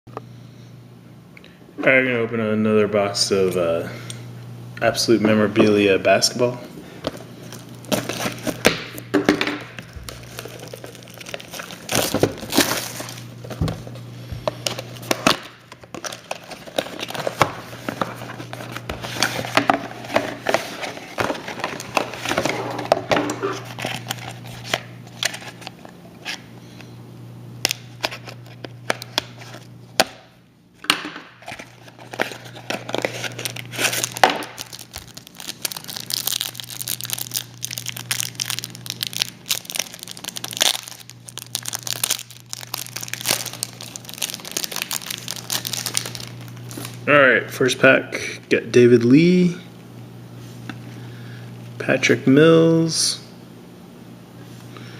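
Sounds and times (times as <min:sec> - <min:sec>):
plastic wrapping crinkling and tearing: 0:07.1 - 0:09.0, 0:09.8 - 0:26.4, 0:31.4 - 0:47.0.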